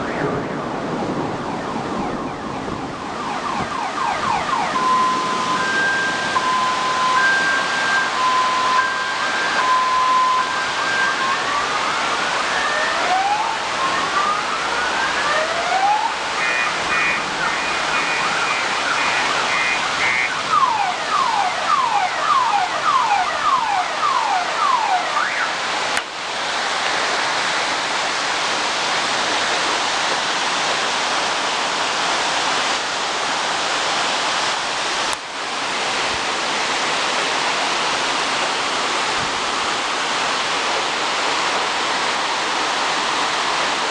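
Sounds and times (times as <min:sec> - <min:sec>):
car alarm sweeps and beeps: 0:00.0 - 0:12.0, 0:16.0 - 0:25.6
heavy rain pouring: 0:00.0 - 0:43.9.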